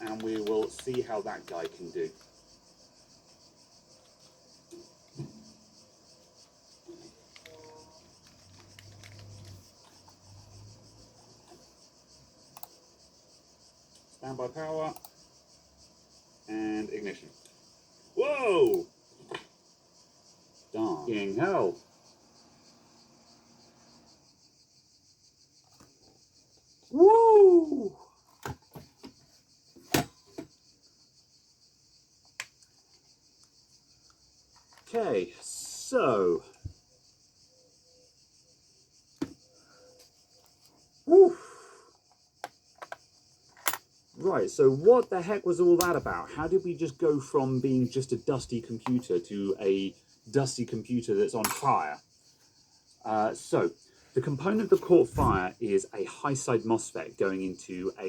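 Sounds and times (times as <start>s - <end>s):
computer hardware handling clicks: 0.0s - 1.8s.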